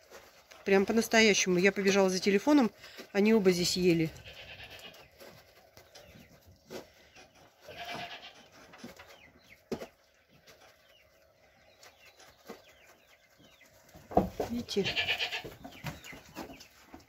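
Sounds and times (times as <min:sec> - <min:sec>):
goat bleating: 0:04.1 - 0:05.0, 0:07.6 - 0:08.5, 0:14.7 - 0:15.6.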